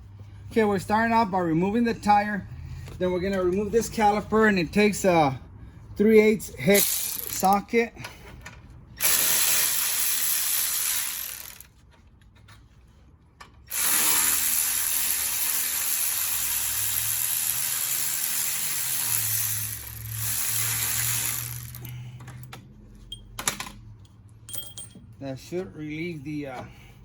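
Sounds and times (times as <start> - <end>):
power ratchet spinning: 6.7 - 7.6, 9.0 - 11.7, 13.7 - 21.9.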